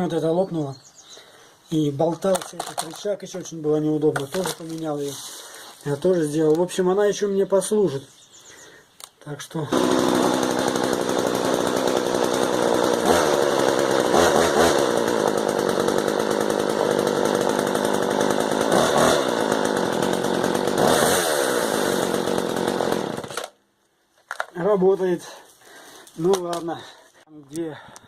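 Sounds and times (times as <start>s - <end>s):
chainsaw revving: 2.4s - 3.0s, 9.6s - 23.6s.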